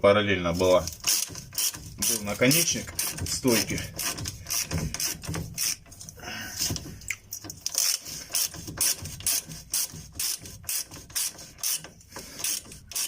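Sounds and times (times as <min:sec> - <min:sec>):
ratchet wrench clicking: 0:00.9 - 0:05.9, 0:07.6 - 0:13.0.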